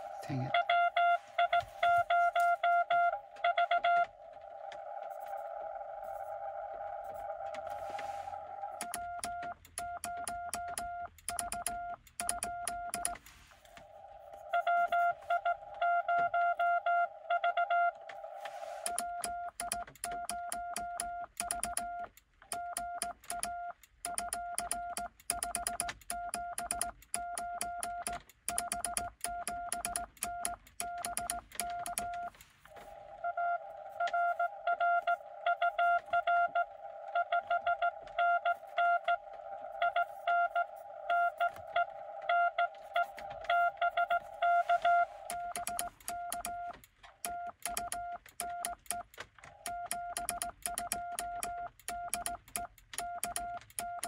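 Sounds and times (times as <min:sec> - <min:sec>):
morse code tones: 0:00.0 - 0:54.0
receiver hiss: 0:32.3 - 0:46.6.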